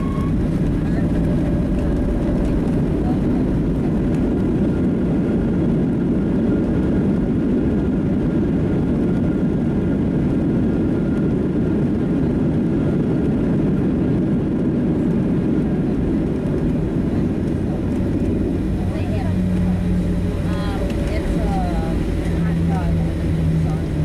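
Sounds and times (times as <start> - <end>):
airplane cabin engine rumble: 0.0 - 24.0.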